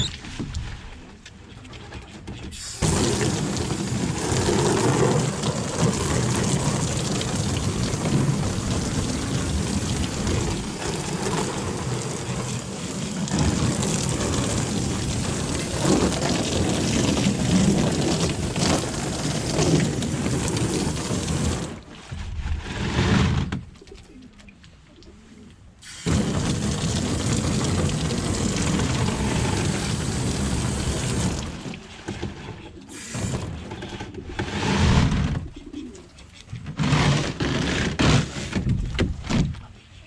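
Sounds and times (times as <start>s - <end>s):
water rushing and splashing: 2.6s - 22.6s, 25.8s - 32.1s, 32.9s - 33.8s.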